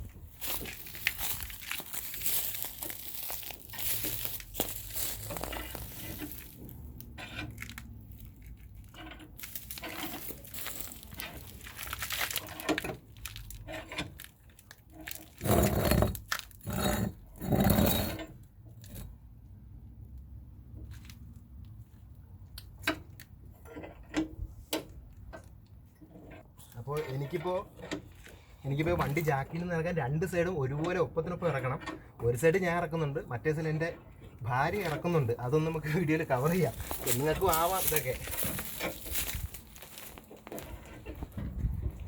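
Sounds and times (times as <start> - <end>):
objects rustling and clattering: 0.0 - 18.2, 34.2 - 42.0.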